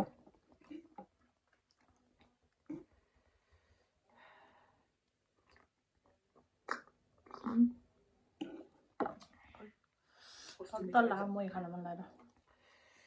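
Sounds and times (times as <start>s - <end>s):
wet mouth sounds: 6.6s - 7.8s, 8.4s - 9.4s.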